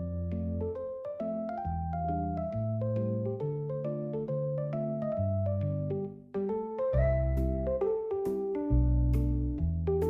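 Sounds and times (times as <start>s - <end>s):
mallet keyboard tune: 0.1s - 10.0s
held bass notes: 8.7s - 10.0s.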